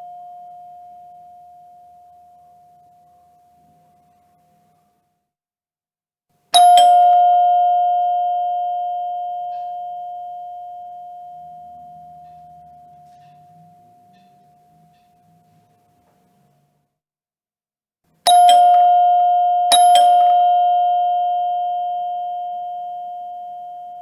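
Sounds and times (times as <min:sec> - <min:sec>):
doorbell chime: 0:06.6 - 0:14.3, 0:18.3 - 0:24.0.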